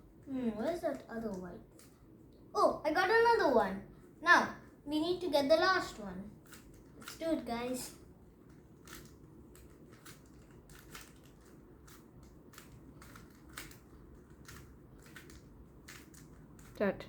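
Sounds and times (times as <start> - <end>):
plastic puzzle cube clicking: 6.4 - 7.2, 8.7 - 16.8.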